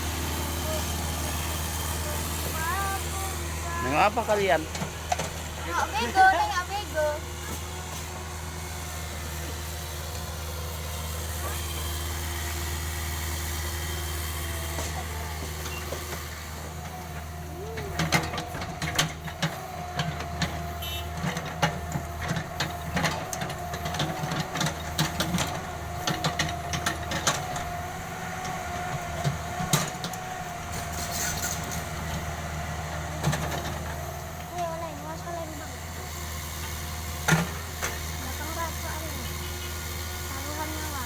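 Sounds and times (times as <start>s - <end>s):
excavator diesel engine running: 0.0s - 41.0s
excavator clanks and knocks: 4.1s - 8.2s, 14.7s - 40.8s.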